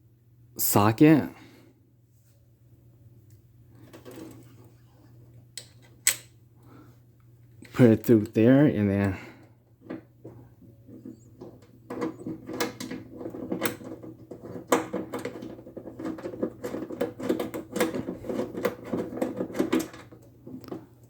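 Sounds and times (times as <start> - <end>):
metallic bolt clicks and rattles: 5.6 - 6.3.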